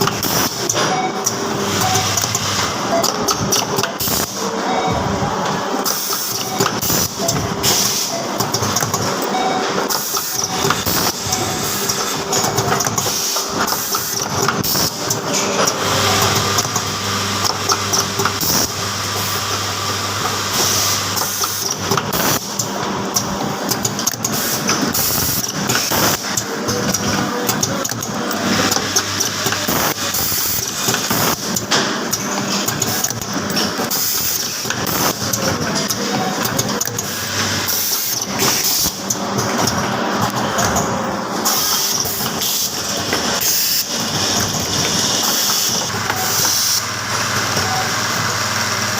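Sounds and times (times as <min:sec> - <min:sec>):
machine mechanical clatter: 0:00.0 - 0:48.9.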